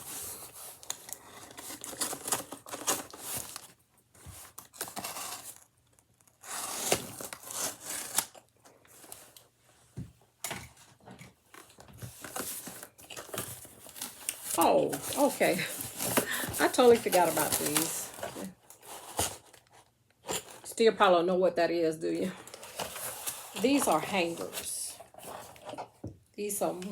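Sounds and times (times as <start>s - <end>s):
cardboard tearing and rustling: 0.0s - 5.7s, 6.3s - 9.4s, 11.5s - 20.6s.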